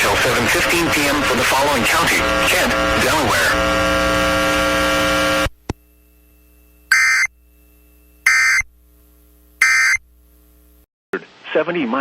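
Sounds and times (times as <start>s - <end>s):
steady electronic tone: 6.9s - 7.3s, 8.3s - 8.7s, 9.6s - 10.0s
warbling digital data tones: 6.9s - 7.3s, 8.3s - 8.6s, 9.6s - 10.0s.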